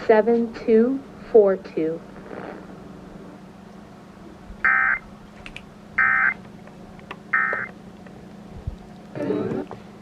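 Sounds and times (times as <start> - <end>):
data tone bursts: 4.7 - 5.0, 6.0 - 6.4, 7.4 - 7.7.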